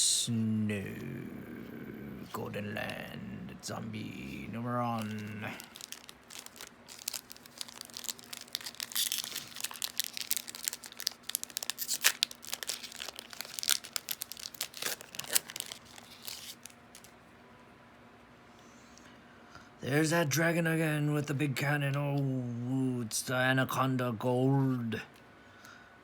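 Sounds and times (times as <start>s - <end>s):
foil wrapper crinkling: 4.2s - 17.2s.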